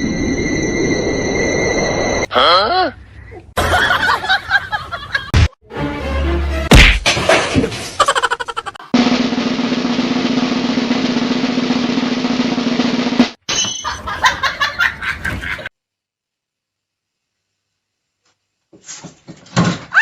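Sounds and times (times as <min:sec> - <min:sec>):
sharp drum hits: 0:06.7 - 0:07.2
snare drum roll: 0:09.0 - 0:13.4.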